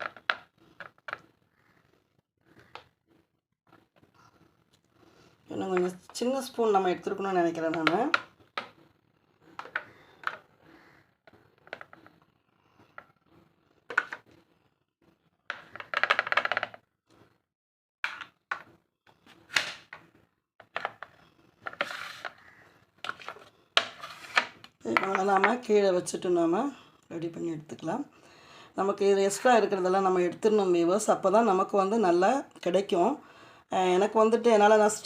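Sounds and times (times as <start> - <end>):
spoon scraping a container: 21.7 - 22.5, 23.1 - 24.6.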